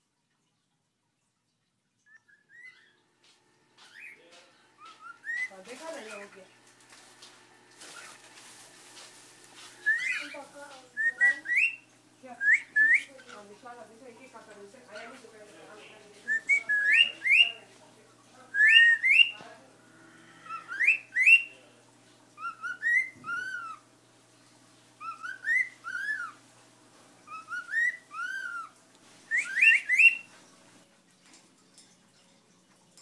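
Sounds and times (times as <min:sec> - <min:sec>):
cockatiel whistling a tune: 0:02.1 - 0:02.9, 0:04.8 - 0:05.6, 0:09.8 - 0:10.4, 0:11.0 - 0:11.8, 0:12.4 - 0:13.2, 0:16.3 - 0:17.6, 0:18.5 - 0:19.4, 0:20.5 - 0:21.6, 0:22.4 - 0:23.8, 0:25.0 - 0:26.4, 0:27.3 - 0:28.7, 0:29.3 - 0:30.3.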